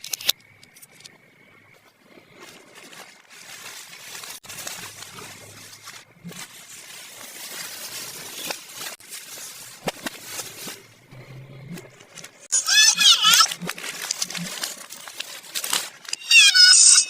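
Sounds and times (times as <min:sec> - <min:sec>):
plastic toy pieces clicking: 0:00.0 - 0:01.1
plastic packaging rustling: 0:02.4 - 0:16.2.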